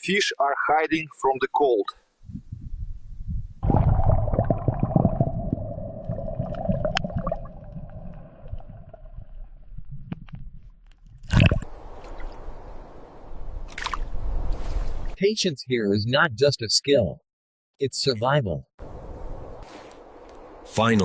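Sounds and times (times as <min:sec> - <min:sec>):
water gurgling and sloshing: 0:03.6 - 0:15.2.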